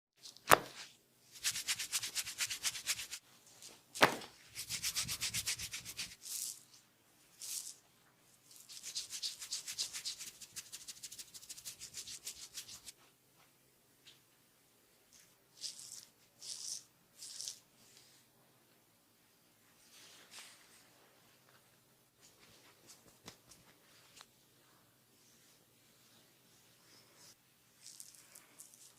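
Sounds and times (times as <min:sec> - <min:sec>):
hands rubbing hair on scalp: 0:01.3 - 0:03.2, 0:04.5 - 0:06.5, 0:08.5 - 0:12.9.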